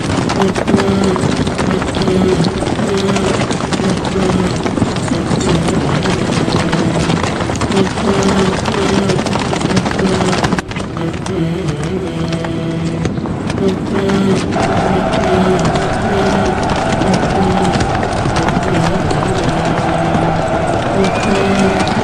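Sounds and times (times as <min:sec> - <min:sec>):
horses galloping: 0:00.0 - 0:22.0
men shouting: 0:14.0 - 0:22.0.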